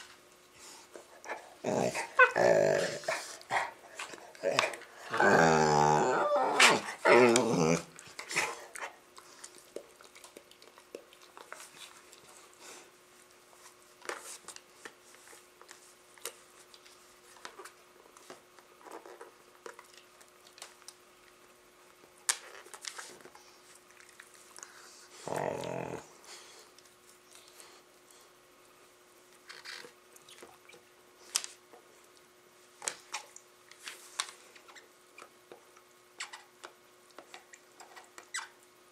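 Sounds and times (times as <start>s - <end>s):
dogs play-growling: 1.2s - 8.9s, 25.1s - 26.2s.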